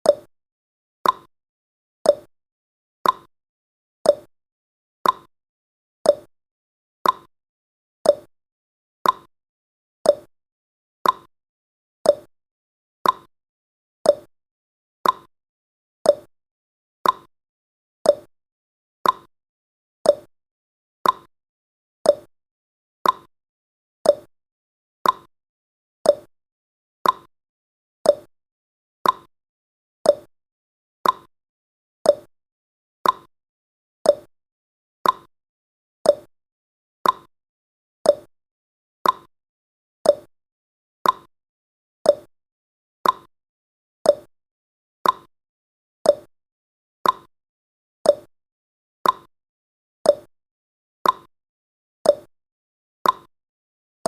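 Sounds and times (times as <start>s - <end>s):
clock ticking: 27.0s - 27.3s, 31.0s - 31.3s, 33.0s - 33.3s, 35.0s - 35.3s, 37.0s - 37.3s, 39.0s - 39.3s, 41.0s - 41.3s, 43.0s - 43.3s, 47.0s - 47.3s.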